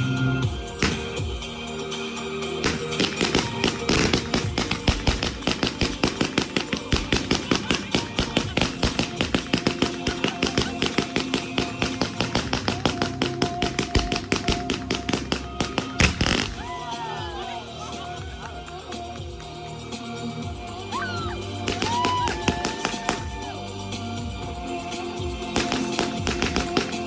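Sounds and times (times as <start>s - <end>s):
background music: 0.0s - 27.0s
firework cake firing shots: 0.7s - 1.5s, 2.6s - 16.8s, 21.6s - 23.5s, 25.4s - 27.0s.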